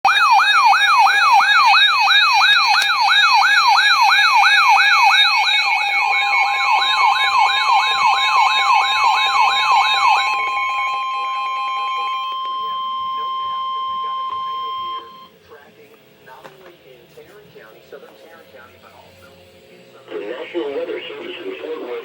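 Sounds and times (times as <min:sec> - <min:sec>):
electronic siren yelping: 0:00.0 - 0:15.3
steady electronic tone: 0:00.2 - 0:15.3.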